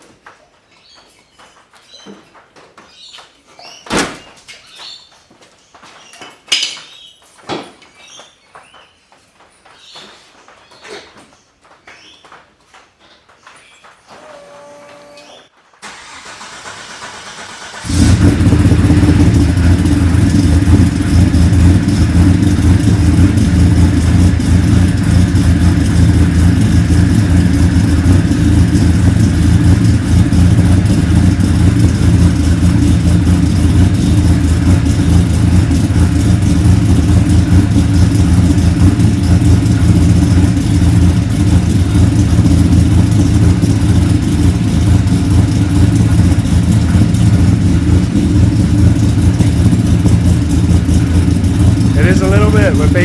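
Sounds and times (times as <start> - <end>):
car engine starting: 15.8 - 53.0
car engine running loudly: 16.0 - 53.0.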